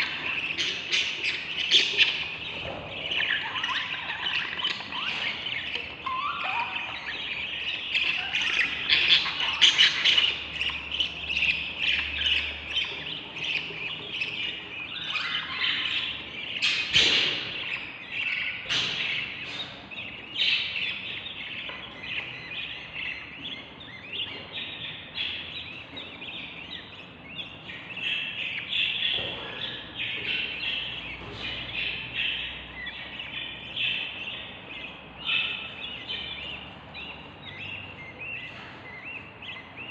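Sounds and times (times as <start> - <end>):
bird chicks chirping: 0.0 - 39.9.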